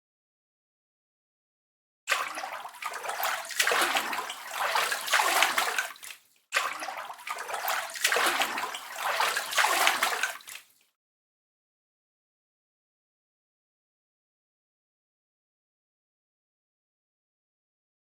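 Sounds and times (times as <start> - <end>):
water splashing and sloshing: 2.1 - 10.9.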